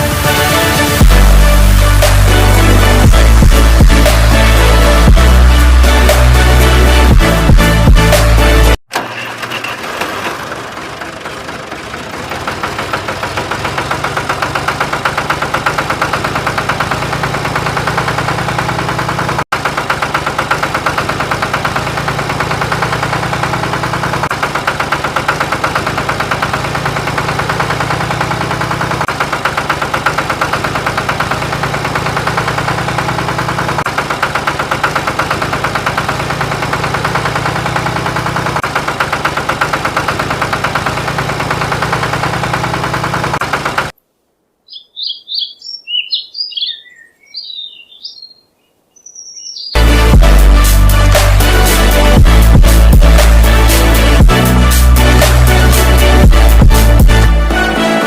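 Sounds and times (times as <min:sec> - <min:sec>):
motor running with fast ticking: 0:10.8 - 0:44.0.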